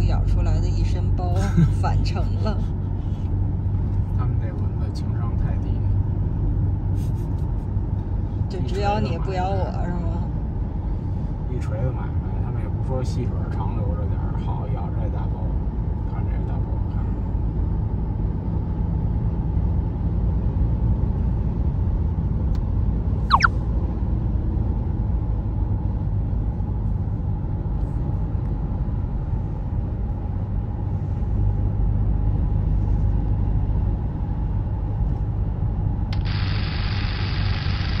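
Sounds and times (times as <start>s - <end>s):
car driving rumble inside cabin: 0.0s - 38.0s
whistle falling in pitch: 23.3s - 23.5s.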